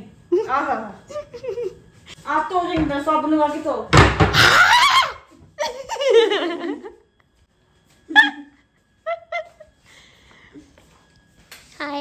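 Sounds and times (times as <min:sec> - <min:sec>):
girl laughing: 0:01.1 - 0:01.9, 0:04.6 - 0:07.0, 0:08.1 - 0:09.8.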